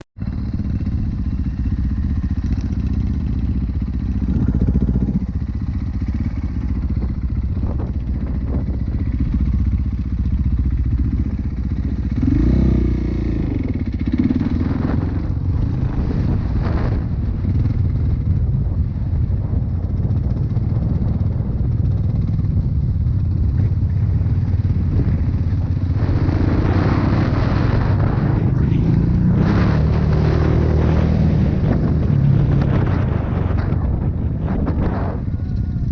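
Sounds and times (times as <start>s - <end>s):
vehicle engine and road rumble: 0.0s - 35.9s.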